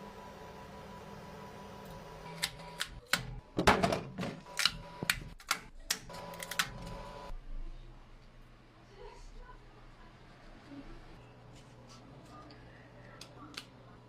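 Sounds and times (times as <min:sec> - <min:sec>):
printer motors humming: 0:00.0 - 0:03.0, 0:06.1 - 0:07.3.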